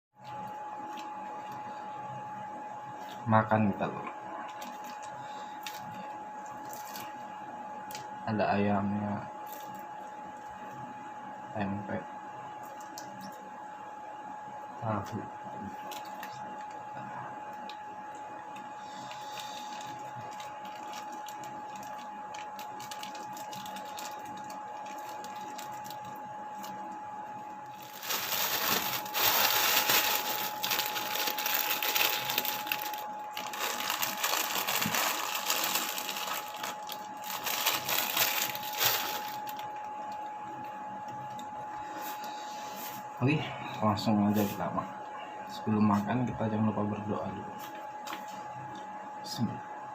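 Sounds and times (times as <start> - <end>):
steady high-pitched hum: 0.2 - 49.9
crackling rustle with clicks: 19.7 - 26.8, 27.8 - 40.2.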